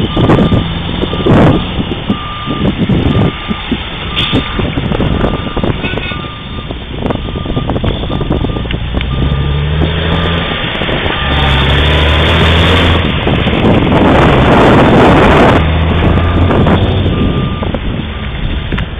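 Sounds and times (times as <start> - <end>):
diesel truck engine drone: 0.0 - 18.9.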